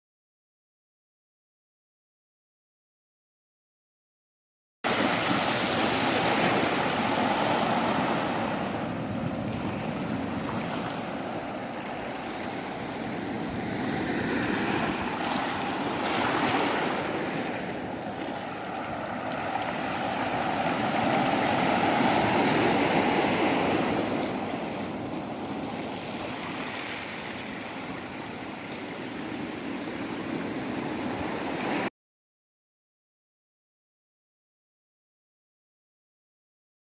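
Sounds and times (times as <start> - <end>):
surf breaking on beach: 4.9 - 28.0.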